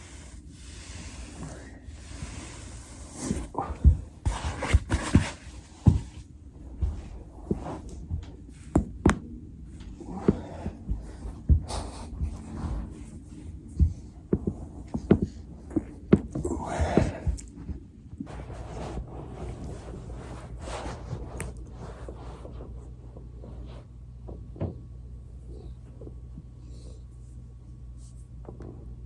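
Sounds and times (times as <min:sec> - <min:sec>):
body rolling on foam roller: 0:00.0 - 0:23.7.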